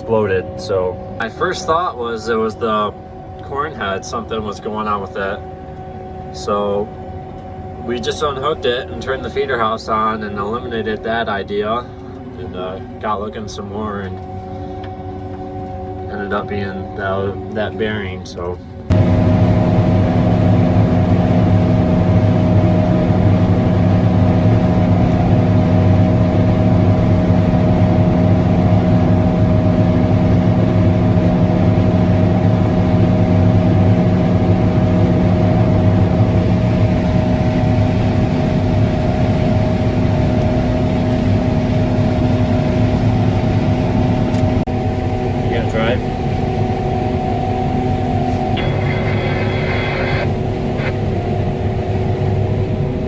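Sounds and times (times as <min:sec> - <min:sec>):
combine harvester running: 0:15.6 - 0:53.0.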